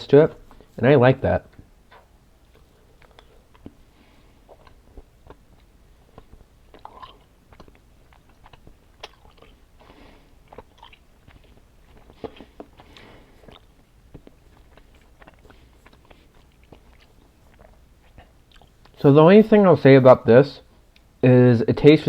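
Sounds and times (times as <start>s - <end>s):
wet mouth clicks and smacks: 1.5s - 19.0s
person chewing candy: 1.6s - 19.0s.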